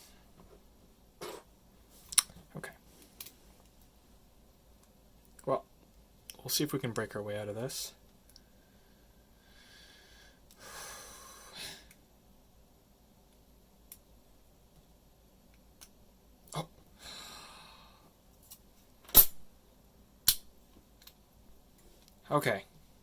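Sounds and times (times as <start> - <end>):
breathy exhales: 17.0 - 18.1.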